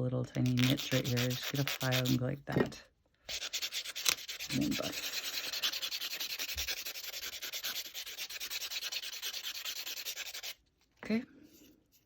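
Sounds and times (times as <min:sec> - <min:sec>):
nail buffer rasping: 0:00.4 - 0:02.2.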